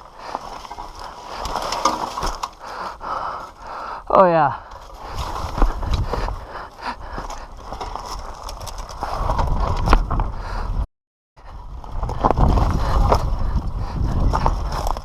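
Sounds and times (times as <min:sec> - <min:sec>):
wind on microphone: 0:05.0 - 0:06.5, 0:09.0 - 0:10.8, 0:11.4 - 0:15.0.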